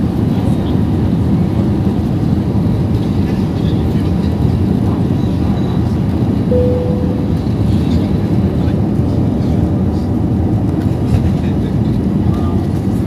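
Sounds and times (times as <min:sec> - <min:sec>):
airliner engines rumbling in cabin: 0:00.0 - 0:13.0
short steady tone: 0:06.5 - 0:07.6.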